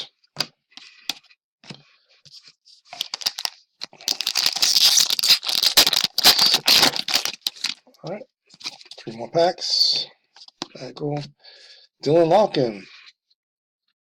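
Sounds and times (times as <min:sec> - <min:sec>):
cards being handled: 0:00.9 - 0:07.8
wrapper tearing and crinkling: 0:03.0 - 0:07.8.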